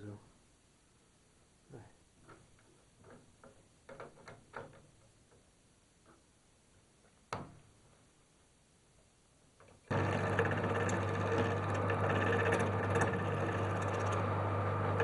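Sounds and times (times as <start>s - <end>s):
tools clicking and knocking: 2.2s - 6.2s.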